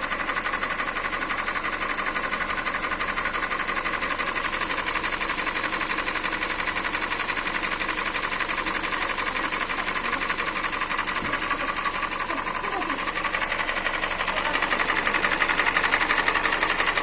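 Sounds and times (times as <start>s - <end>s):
car engine running: 0.0s - 17.0s
fast ticking engine knock: 0.0s - 17.0s.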